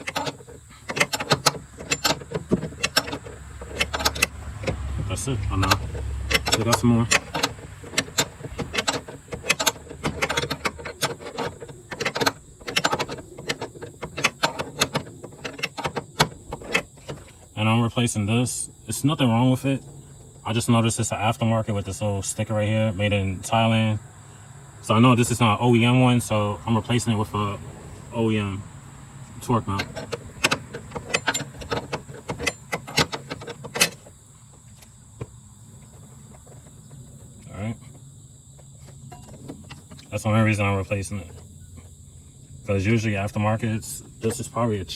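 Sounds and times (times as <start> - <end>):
wrench clicking on bolt: 0.0 - 17.3, 29.7 - 34.1.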